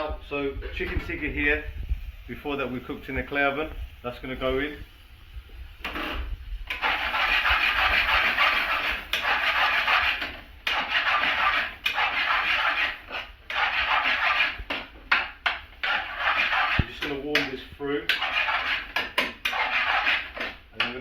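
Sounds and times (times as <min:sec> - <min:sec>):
meat sizzling in a pan: 0:01.7 - 0:12.1.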